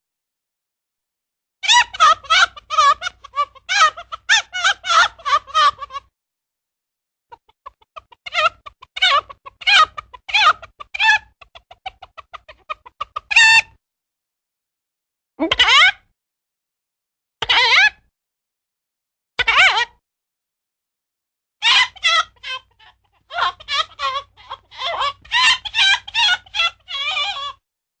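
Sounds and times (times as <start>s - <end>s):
cartoon chicken squawk: 1.6s - 6.0s, 7.4s - 13.8s, 15.4s - 16.1s, 17.4s - 18.0s, 19.4s - 20.0s, 21.6s - 27.6s
cartoon chicken clucking: 1.6s - 6.1s, 7.3s - 13.8s, 21.6s - 27.6s.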